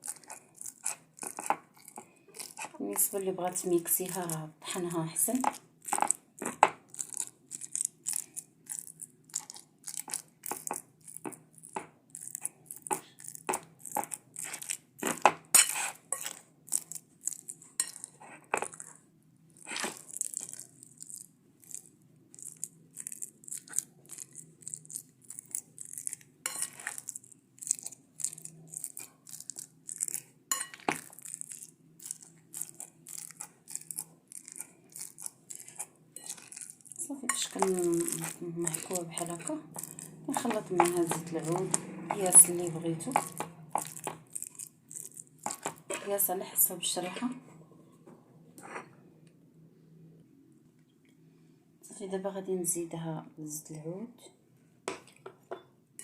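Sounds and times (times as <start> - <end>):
fork scraping and clicking on dish: 12.4 - 16.4, 26.5 - 27.1, 35.5 - 36.7.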